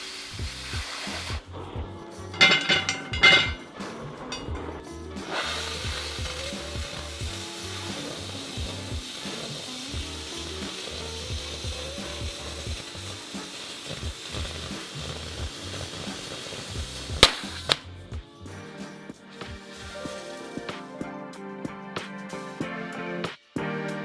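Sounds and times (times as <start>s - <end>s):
welding arc crackling sizzle: 0.0s - 1.5s, 5.2s - 17.8s, 19.4s - 21.0s
background music with a beat: 0.3s - 24.0s.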